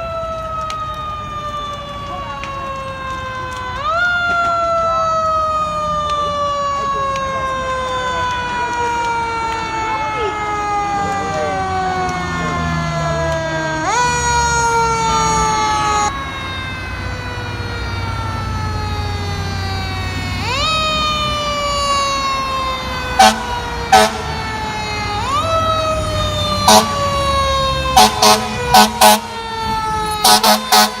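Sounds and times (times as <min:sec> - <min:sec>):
fire truck siren: 0:00.0 - 0:31.0
truck engine rumble: 0:00.0 - 0:31.0
air horn blasts: 0:23.2 - 0:24.4, 0:26.6 - 0:27.0, 0:27.9 - 0:29.4, 0:30.2 - 0:31.0.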